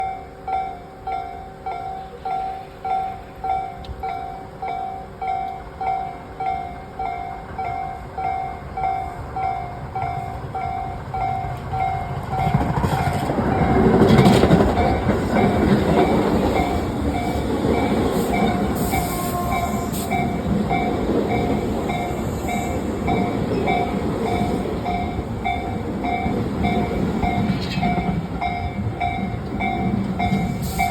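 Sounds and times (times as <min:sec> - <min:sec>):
train wheels rumbling on rails: 0:00.0 - 0:30.9.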